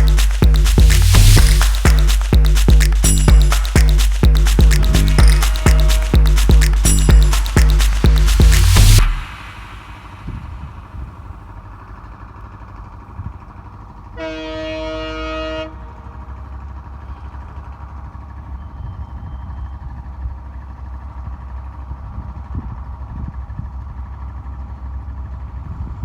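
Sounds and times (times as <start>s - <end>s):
train rumbling: 0.0s - 12.2s
locomotive horn blast: 4.8s - 6.4s, 14.2s - 16.1s.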